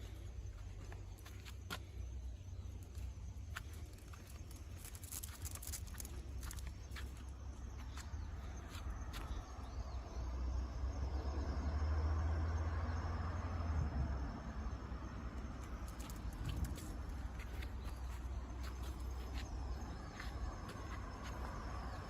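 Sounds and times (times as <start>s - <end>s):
faint insects chirping: 0.0s - 22.0s
wind rumbling on microphone: 13.6s - 22.0s.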